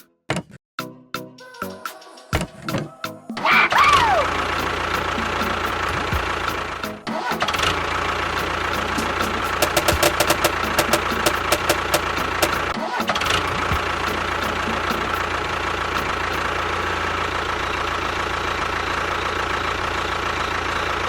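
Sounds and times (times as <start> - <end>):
rapid clicking: 9.0 - 12.8
small motor running: 9.6 - 12.7.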